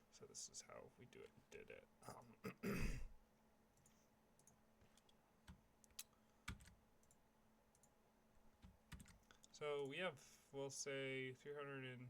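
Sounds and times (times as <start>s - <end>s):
faint computer clicks: 3.8s - 8.0s.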